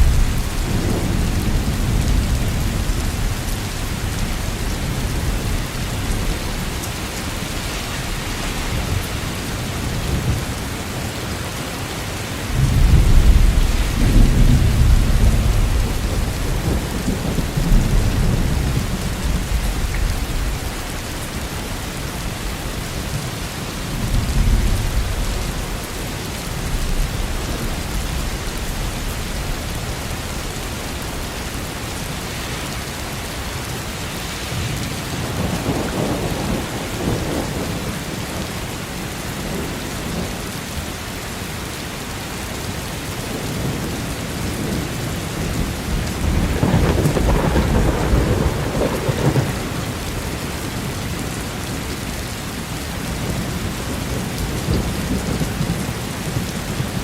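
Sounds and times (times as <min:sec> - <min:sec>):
thunder rumbling: 0:00.0 - 0:10.7, 0:12.5 - 0:21.5, 0:44.5 - 0:51.4
heavy rain: 0:00.0 - 0:57.0.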